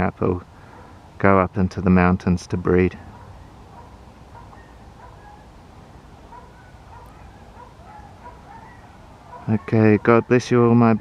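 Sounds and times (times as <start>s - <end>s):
low background noise: 0.0s - 11.0s
dog barking faintly: 0.7s - 1.0s, 3.0s - 5.5s, 6.3s - 10.7s.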